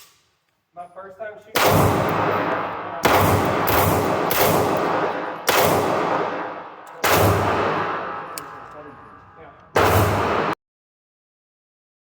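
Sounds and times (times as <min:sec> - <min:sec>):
pistol shots echoing: 0:01.5 - 0:10.6.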